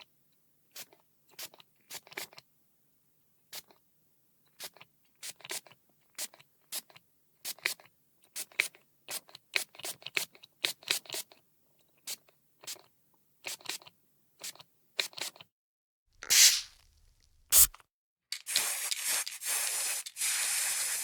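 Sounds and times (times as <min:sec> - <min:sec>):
spray container bursts: 0:16.2 - 0:17.8, 0:18.5 - 0:21.0.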